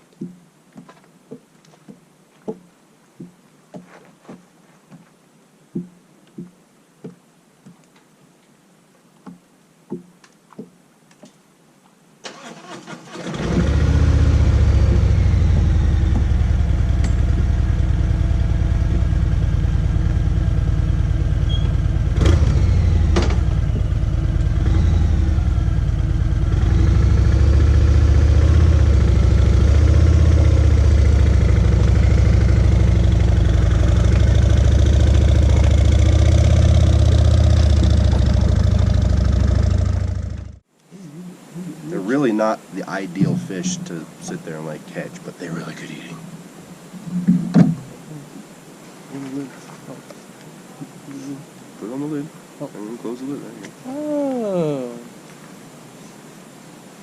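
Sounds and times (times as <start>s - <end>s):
vehicle engine running: 13.3s - 40.6s
sharp knocks: 47.2s - 47.9s.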